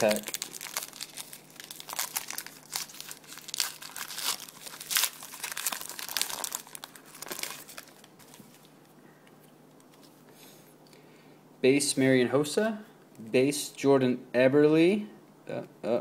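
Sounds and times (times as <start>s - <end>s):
wrapper tearing and crinkling: 0.0s - 8.7s.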